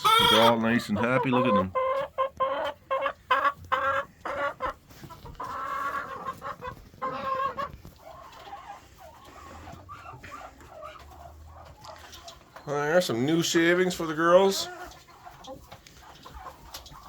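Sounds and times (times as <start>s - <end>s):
poultry calling: 0.0s - 13.5s.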